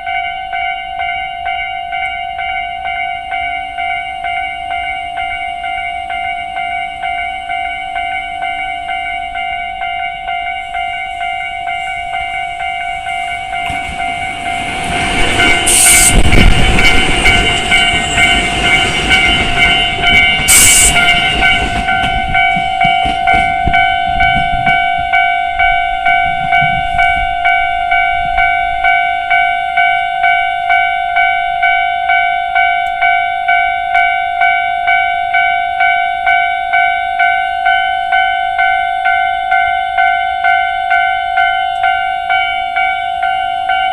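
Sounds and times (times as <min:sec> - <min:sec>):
level-crossing alarm ringing: 0:00.0 - 0:43.9
train wheels clacking over rails: 0:13.3 - 0:25.0.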